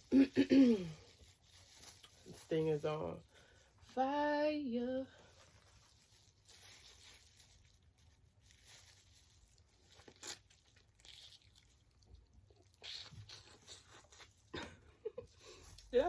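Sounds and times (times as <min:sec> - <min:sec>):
soft chewing: 0:05.3 - 0:16.0
shrimp shell crackling: 0:05.7 - 0:14.4.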